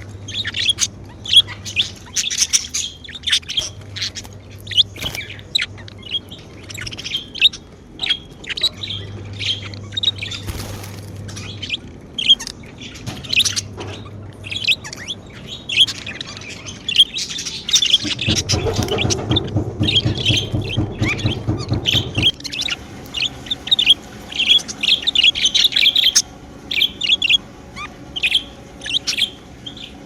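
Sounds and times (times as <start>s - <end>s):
budgerigars chirping: 0.0s - 30.0s.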